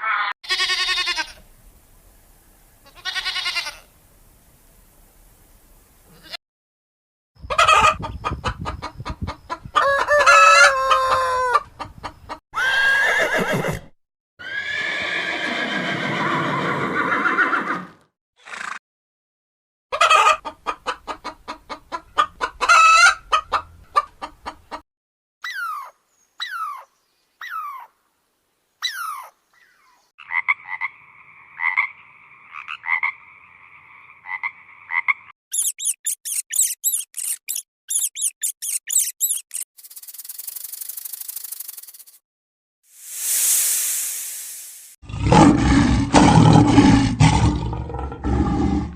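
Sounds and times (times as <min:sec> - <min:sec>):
steady hiss: 0:01.4 - 0:02.8, 0:42.9 - 0:45.0
two-toned trilling call: 0:35.5 - 0:42.1
rapid high chirps: 0:35.5 - 0:42.2, 0:43.0 - 0:45.0.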